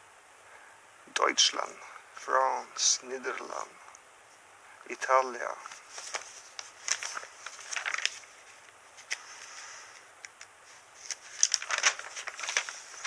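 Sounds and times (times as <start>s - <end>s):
packaging rustling: 5.6s - 13.0s.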